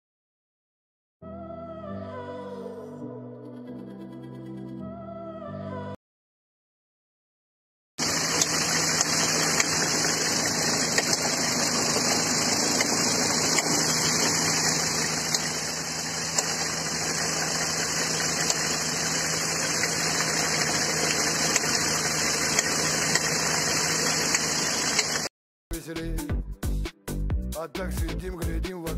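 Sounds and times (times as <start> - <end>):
car engine idling: 8.0 - 25.3
sharp irregular engine clicks: 8.0 - 25.3.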